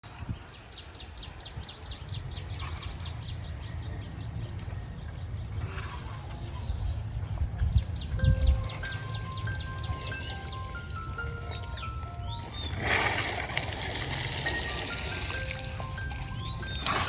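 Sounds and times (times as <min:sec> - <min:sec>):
bird chirping rapidly: 0:07.7 - 0:17.0.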